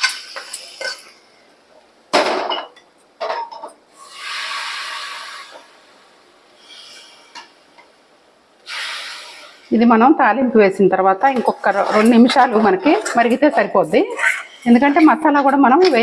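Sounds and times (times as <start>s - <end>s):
pots and utensils clinking: 0.0s - 1.2s
hot oil hissing: 0.0s - 1.5s, 3.9s - 9.8s.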